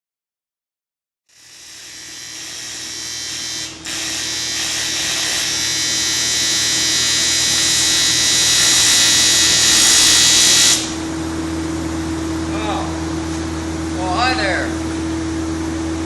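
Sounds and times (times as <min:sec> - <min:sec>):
welding arc hissing buzz: 0:01.3 - 0:11.6.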